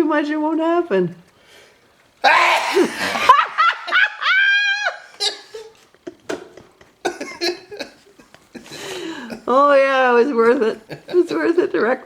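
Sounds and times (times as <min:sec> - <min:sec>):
person sneezing: 0:02.3 - 0:03.2
person laughing and giggling: 0:02.3 - 0:09.5.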